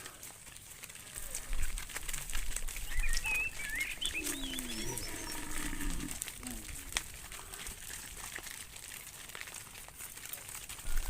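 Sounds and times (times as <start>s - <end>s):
cow mooing: 4.2s - 6.7s.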